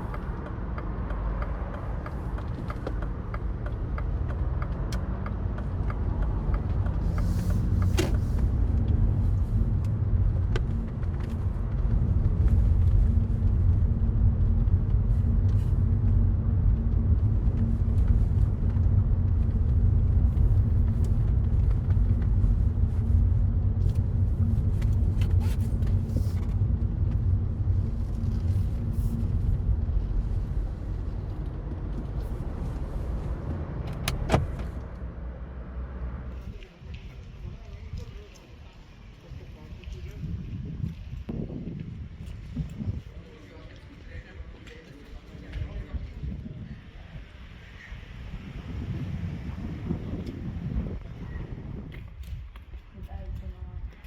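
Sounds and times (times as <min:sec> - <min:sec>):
car engine accelerating: 0:00.0 - 0:36.6
tyre and wind rumble: 0:00.0 - 0:54.0.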